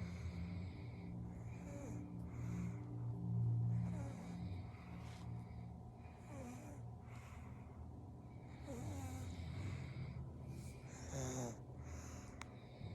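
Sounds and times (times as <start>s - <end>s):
baby snoring: 10.9s - 11.6s.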